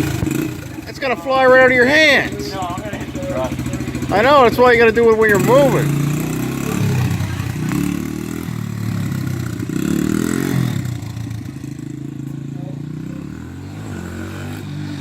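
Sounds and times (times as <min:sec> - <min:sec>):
small engine revving: 0:00.0 - 0:15.0.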